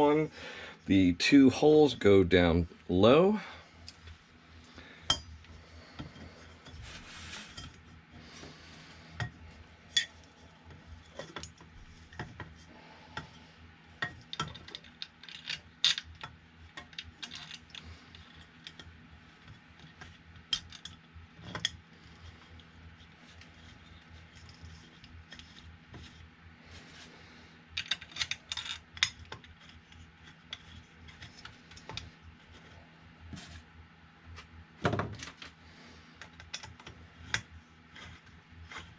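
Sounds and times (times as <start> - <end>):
small metal parts clinking: 14.1 - 18.8, 27.8 - 29.8.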